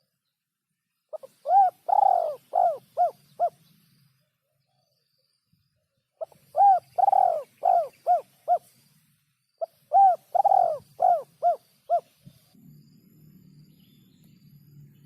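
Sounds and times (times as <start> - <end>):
dove cooing: 1.1 - 3.6, 6.2 - 8.8, 9.6 - 12.4.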